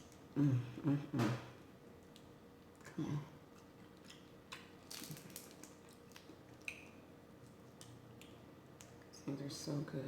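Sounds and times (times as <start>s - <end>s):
crawfish shells cracking and squishing: 3.5s - 9.0s.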